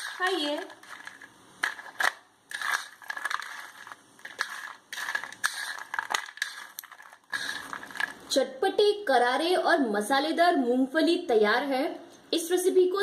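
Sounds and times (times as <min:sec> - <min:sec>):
peanuts crunching: 0:00.0 - 0:08.3.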